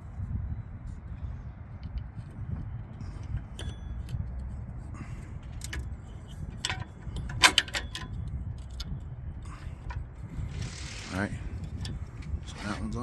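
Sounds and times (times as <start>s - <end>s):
steady low rumble: 0.0s - 13.0s
metallic clicks and clinks: 5.4s - 12.0s.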